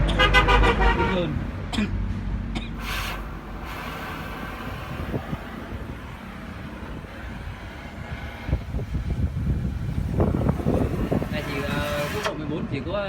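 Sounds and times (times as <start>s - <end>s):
vehicle engine rumbling: 0.0s - 13.0s
burst of hiss: 2.8s - 8.9s.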